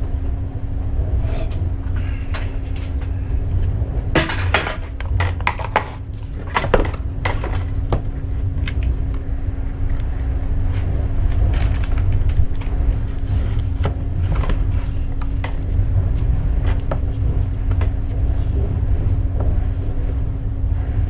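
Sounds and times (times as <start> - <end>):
low machine hum: 0.0 - 21.0.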